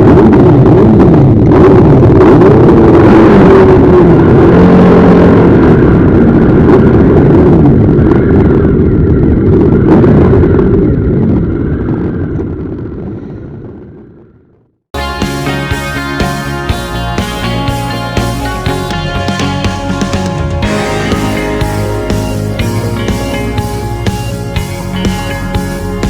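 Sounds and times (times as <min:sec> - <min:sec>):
motorcycle engines revving: 0:15.0 - 0:26.0.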